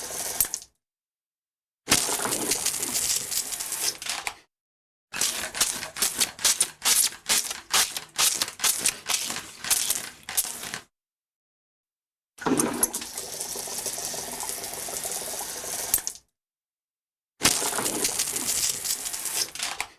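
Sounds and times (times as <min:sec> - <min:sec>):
toy water gun squirting: 0:05.2 - 0:10.8.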